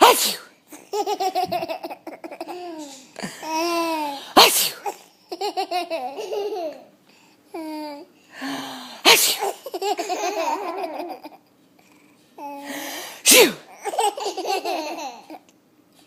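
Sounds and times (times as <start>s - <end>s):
person sneezing: 0.0s - 0.5s, 4.2s - 5.0s, 9.0s - 9.6s, 13.0s - 13.8s
baby laughing: 0.7s - 4.2s, 4.8s - 6.9s, 9.4s - 11.5s, 13.7s - 15.5s.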